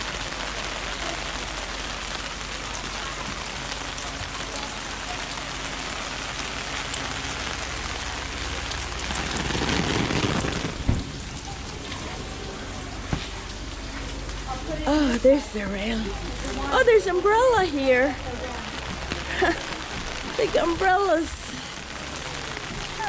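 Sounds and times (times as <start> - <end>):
rain falling: 0.0 - 23.0.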